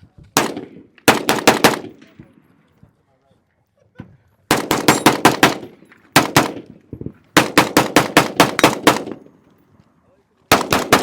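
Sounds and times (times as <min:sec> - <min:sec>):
rapid gunshots: 0:00.4 - 0:02.0, 0:04.5 - 0:06.6, 0:07.4 - 0:09.2, 0:10.5 - 0:11.0.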